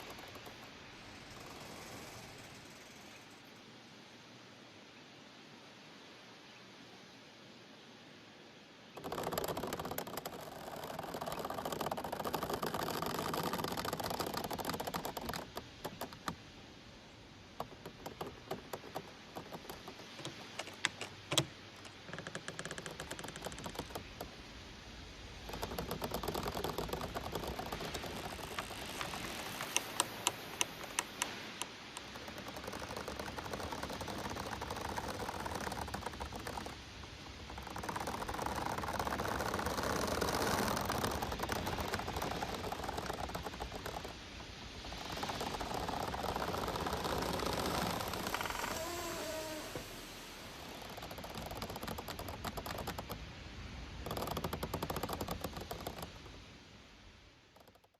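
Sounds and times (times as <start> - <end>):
rapid sharp clicks: 0.0 - 3.4, 9.0 - 16.4, 17.6 - 24.4, 25.4 - 44.2, 50.8 - 53.2, 54.0 - 56.3
bamboo stems rustling and creaking: 0.0 - 3.7, 8.8 - 56.6, 57.2 - 57.9.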